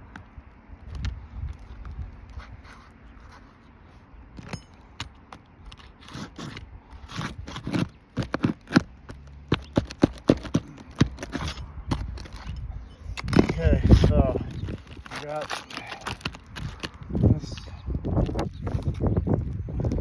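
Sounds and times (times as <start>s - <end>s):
pry tool scraping shingles: 4.4s - 19.1s.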